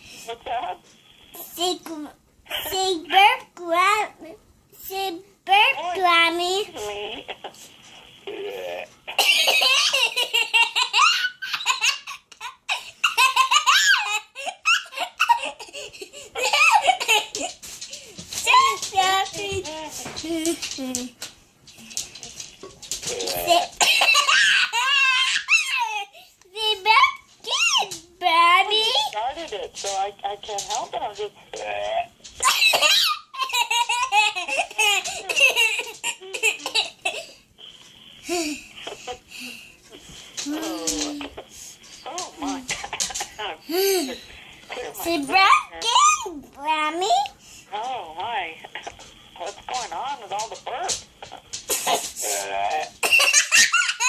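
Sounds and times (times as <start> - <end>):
toddler laughing: 9.1 - 17.6, 23.5 - 26.2, 32.4 - 37.4
toddler belly-laughing: 23.2 - 26.2.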